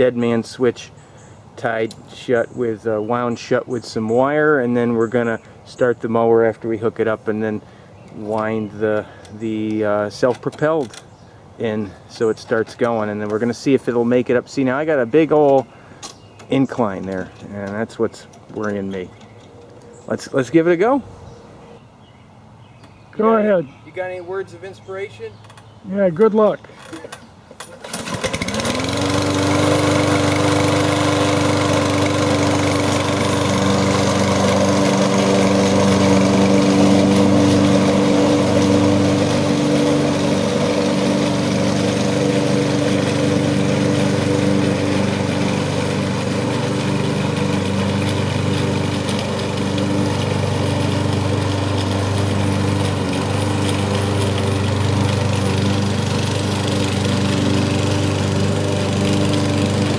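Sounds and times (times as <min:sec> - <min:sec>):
lawn mower engine running: 0:26.8 - 0:59.9.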